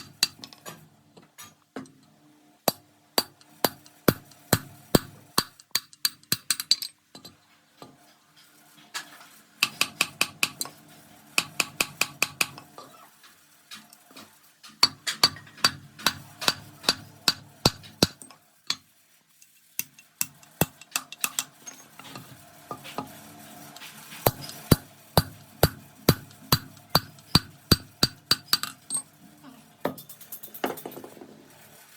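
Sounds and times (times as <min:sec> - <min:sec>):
faint machine hum: 0:00.0 - 0:31.9.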